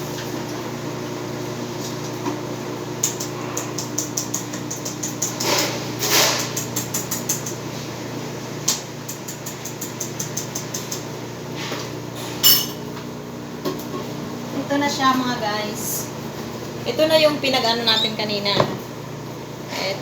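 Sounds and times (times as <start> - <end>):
utensils and containers clicking: 9.1 - 11.1.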